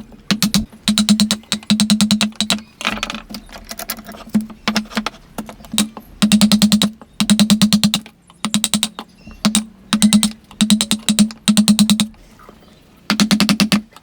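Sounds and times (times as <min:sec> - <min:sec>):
hammer tapping chisel into wood: 0:05.8 - 0:12.1, 0:13.1 - 0:14.0.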